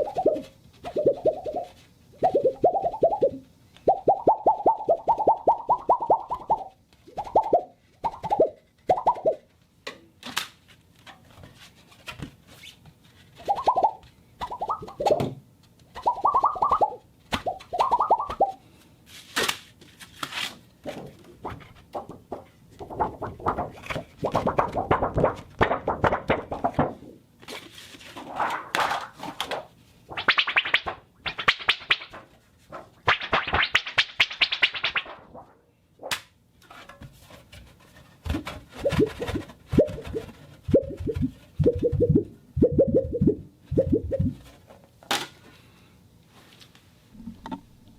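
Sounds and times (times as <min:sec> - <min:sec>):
plastic sheet crinkling: 0:19.1 - 0:29.7
plastic sheet popping: 0:21.4 - 0:27.0, 0:28.2 - 0:32.3, 0:33.0 - 0:35.4.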